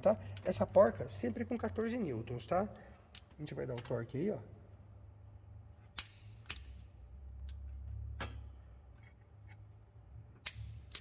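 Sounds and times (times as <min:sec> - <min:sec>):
torque wrench clicking: 0:05.8 - 0:07.6.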